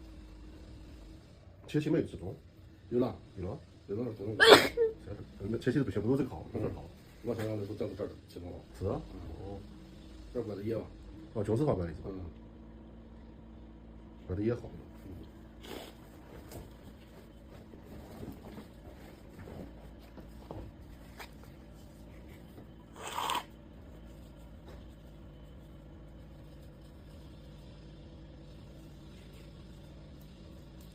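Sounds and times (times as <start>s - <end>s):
steady low hum: 0.0s - 30.9s
woman sneezing: 4.4s - 5.0s
faint clicks and rustles: 14.8s - 22.9s, 23.5s - 30.9s.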